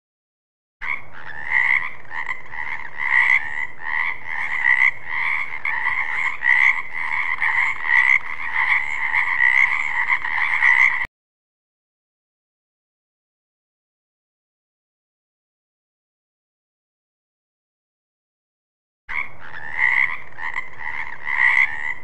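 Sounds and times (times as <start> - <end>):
frog croaking: 0.8 - 11.1, 19.1 - 22.0.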